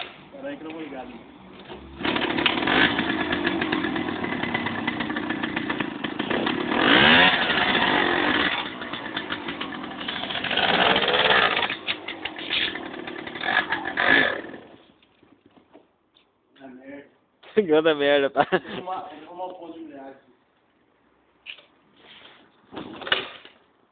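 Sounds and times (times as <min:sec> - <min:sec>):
moped engine revving: 0:01.6 - 0:14.8.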